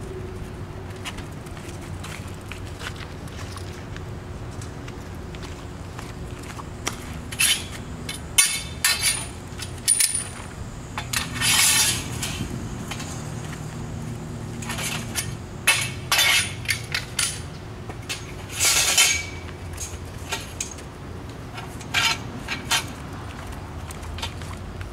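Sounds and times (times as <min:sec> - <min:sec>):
metal bike rack clanking: 0:07.3 - 0:10.4, 0:11.0 - 0:13.2, 0:14.6 - 0:20.8, 0:21.6 - 0:22.9.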